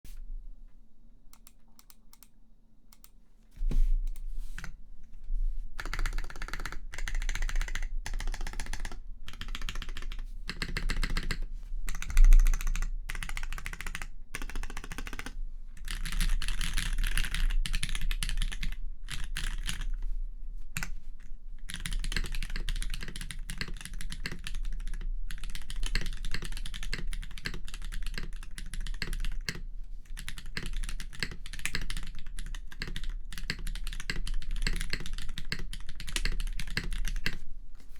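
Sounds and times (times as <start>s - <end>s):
typing on mechanical keyboard: 5.8s - 19.9s, 21.7s - 37.4s.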